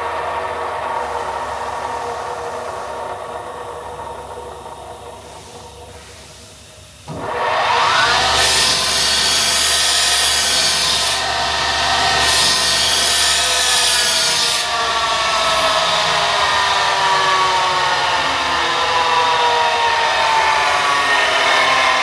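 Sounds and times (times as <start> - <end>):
saw cutting hiss: 5.2 - 17.7
chop saw motor whining: 7.1 - 22.0.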